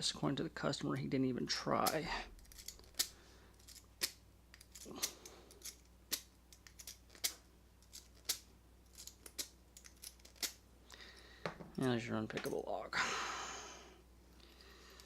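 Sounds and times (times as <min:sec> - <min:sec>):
lock pick metallic clicks: 0:01.9 - 0:10.6.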